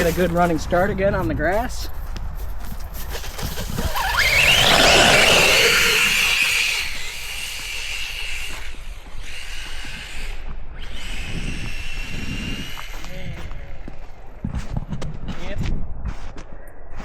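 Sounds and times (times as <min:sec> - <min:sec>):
tyres rushing: 0:03.2 - 0:07.8
electric motor whining: 0:03.7 - 0:13.1.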